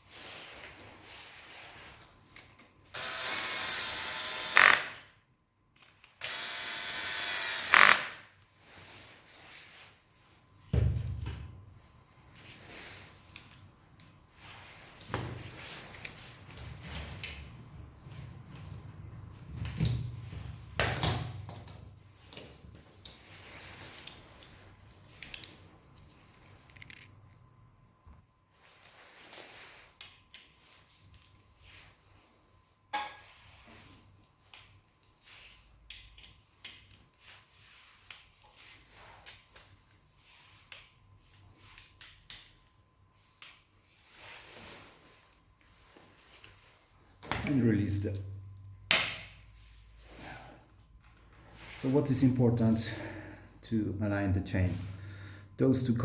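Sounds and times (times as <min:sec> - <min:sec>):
low steady hum: 0:39.8 - 0:56.0.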